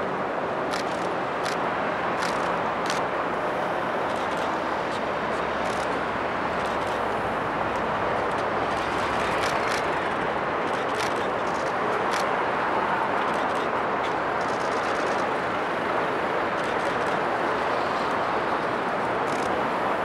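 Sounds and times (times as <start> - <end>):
city traffic roar: 0.0 - 20.0
trains: 0.0 - 20.0
sharp clacks: 2.2 - 3.0, 8.3 - 12.3.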